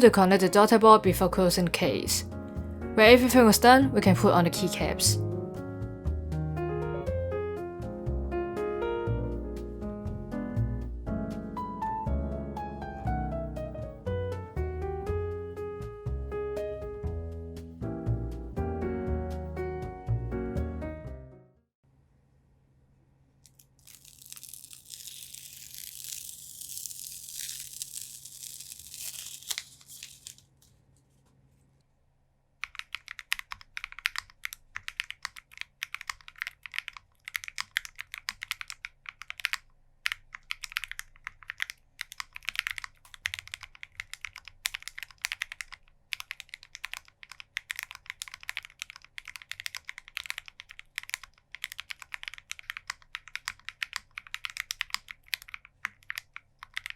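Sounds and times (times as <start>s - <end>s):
crinkling tearing noise: 23.4s - 31.2s
fast typing on mechanical keyboard: 32.6s - 56.9s.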